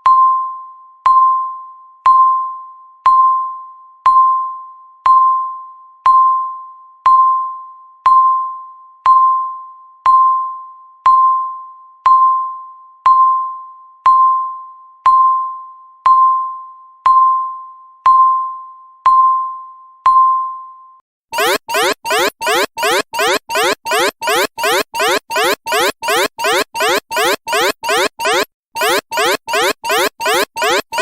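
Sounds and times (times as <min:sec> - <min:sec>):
countdown timer beeps: 0:21.4 - 0:31.0.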